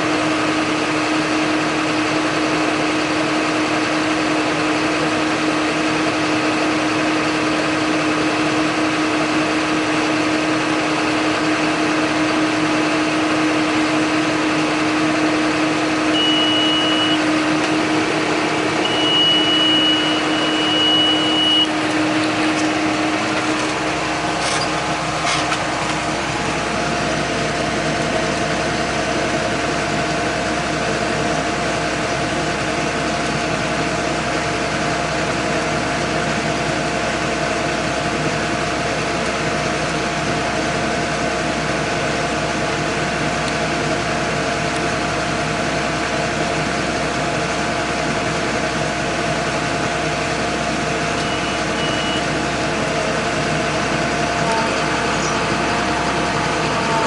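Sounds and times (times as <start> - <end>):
tractor diesel engine running: 0.0 - 57.0
high electronic beep: 16.1 - 17.3, 18.8 - 21.8, 51.2 - 52.3.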